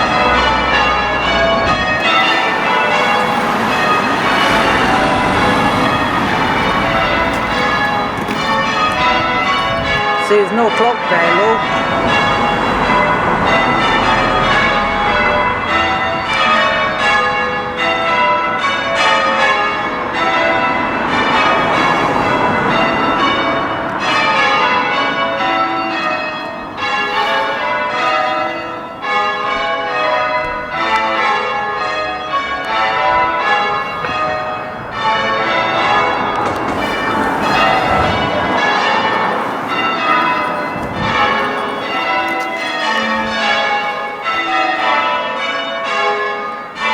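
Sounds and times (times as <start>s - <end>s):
church bells change-ringing: 0.0s - 46.9s.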